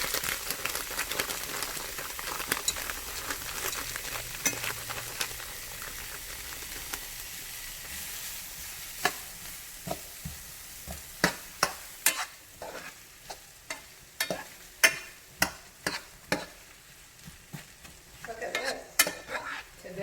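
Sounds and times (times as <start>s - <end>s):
food sizzling in a pan: 0.0s - 20.0s
utensil scraping a pan: 7.8s - 20.0s.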